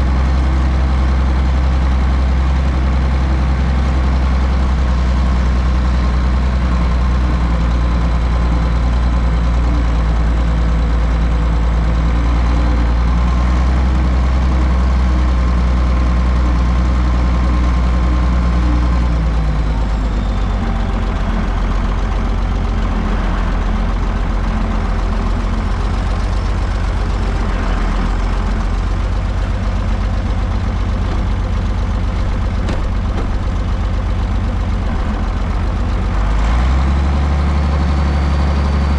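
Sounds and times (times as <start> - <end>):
heavy machinery engine running: 0.0 - 38.9.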